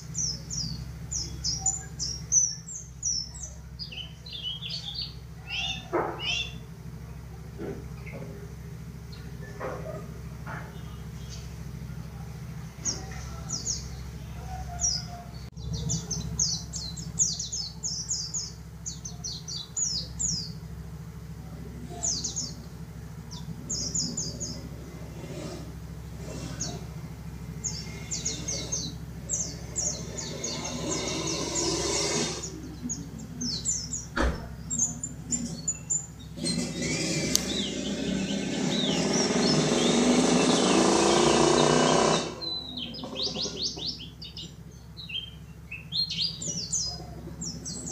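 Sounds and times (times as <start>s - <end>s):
bird twittering chirps: 0.0s - 6.9s, 10.7s - 12.2s, 12.8s - 20.8s, 21.9s - 47.9s
loud rushing noise: 36.6s - 42.6s.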